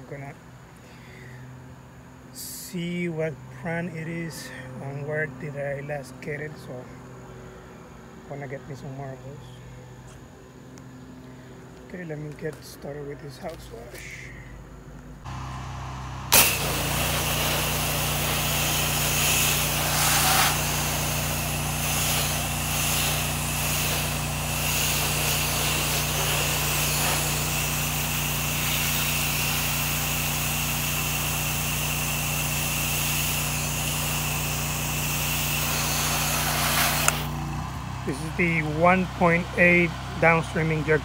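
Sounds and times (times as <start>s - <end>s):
pressure washer engine hum: 15.2s - 41.0s
spray wand hissing: 16.3s - 37.4s
spray wand click: 36.8s - 37.3s.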